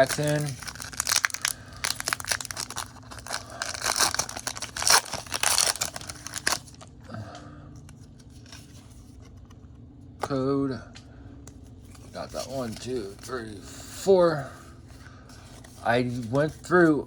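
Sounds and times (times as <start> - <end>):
foil wrapper crinkling and tearing: 0.0 - 6.9.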